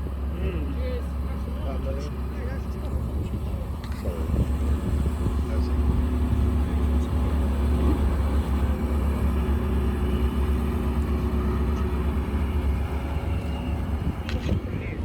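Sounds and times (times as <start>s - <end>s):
car engine idling: 0.0s - 15.0s.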